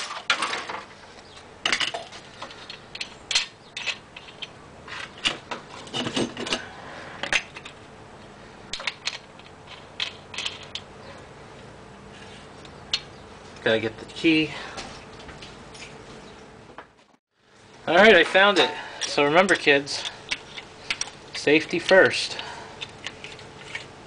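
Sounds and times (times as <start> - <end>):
metal tools clinking: 1.6 - 7.8, 8.7 - 10.9, 15.7 - 16.0, 18.0 - 23.9.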